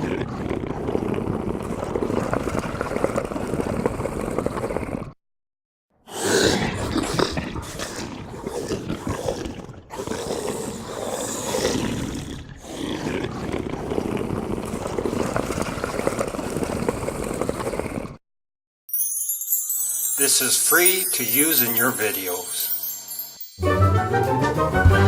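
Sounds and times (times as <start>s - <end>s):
monster growling and roaring: 0.0s - 2.7s, 6.0s - 18.2s.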